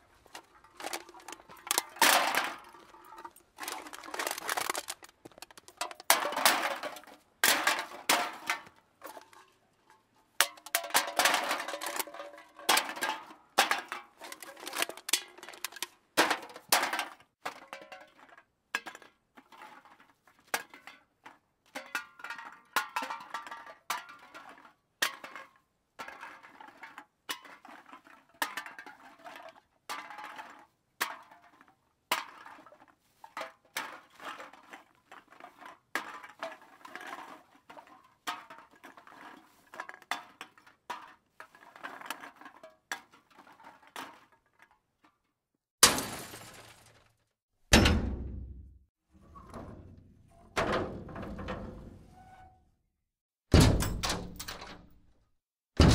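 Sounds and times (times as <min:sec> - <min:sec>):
hard objects clinking and clattering: 0:00.2 - 0:20.0.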